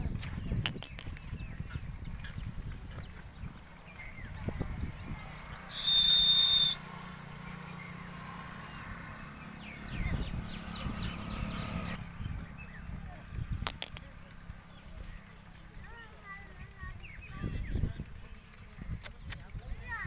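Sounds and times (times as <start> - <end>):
birds chirping: 0.0 - 20.0
shrill whistle blast: 5.7 - 6.8.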